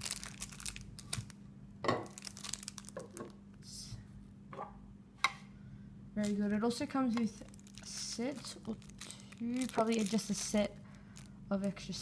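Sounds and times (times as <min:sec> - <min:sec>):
low electrical hum: 0:00.0 - 0:12.0
plastic and cardboard rustling: 0:06.2 - 0:11.3.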